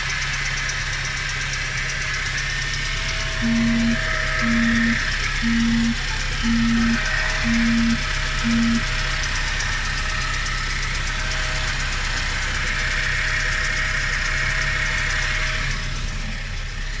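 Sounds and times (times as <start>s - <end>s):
car engine running: 0.0s - 17.0s
high-pitched whine: 1.7s - 10.8s.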